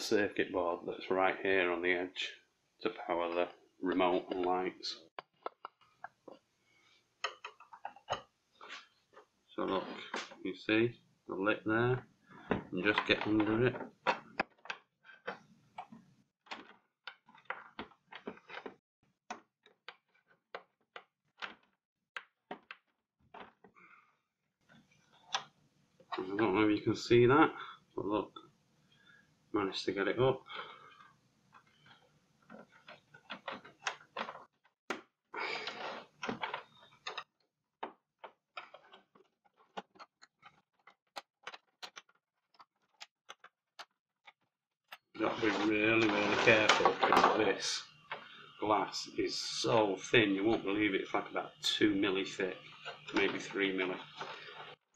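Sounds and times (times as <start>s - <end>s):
plastic case scraping rustle: 45.2s - 47.7s.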